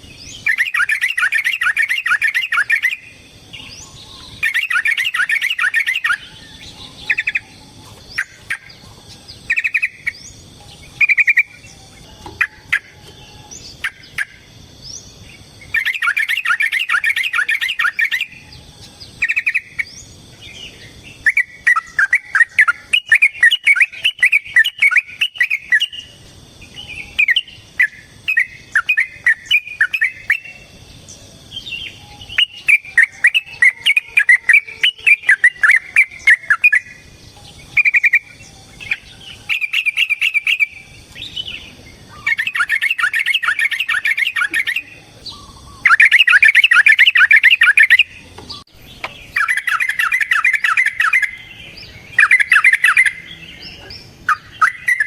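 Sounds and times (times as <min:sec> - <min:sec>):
bulbul singing bubbling phrases: 0:42.1 - 0:48.3.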